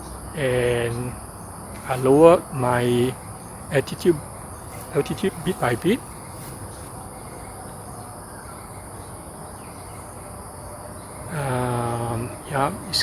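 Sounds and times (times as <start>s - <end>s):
insect chorus humming: 0.0s - 13.0s
outdoor background noise: 0.0s - 13.0s
man speaking: 0.4s - 1.2s, 1.8s - 4.2s, 4.9s - 6.0s, 11.3s - 13.0s.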